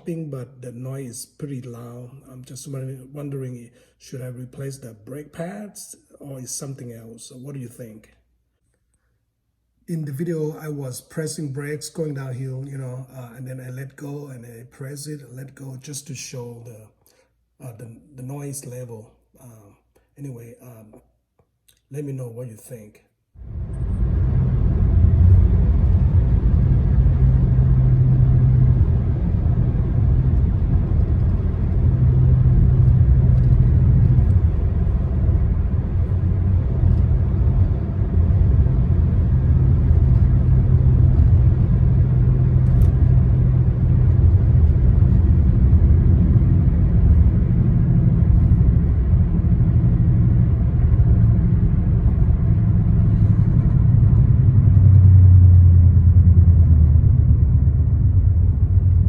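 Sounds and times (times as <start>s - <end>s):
low brake vibration hum: 23.4s - 59.0s
road rumble: 23.4s - 59.0s.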